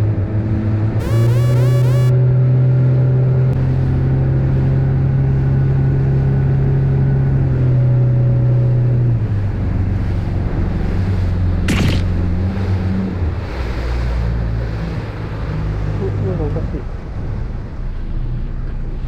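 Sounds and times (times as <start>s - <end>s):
wind: 0.0s - 19.0s
small boat engine running: 1.0s - 2.1s.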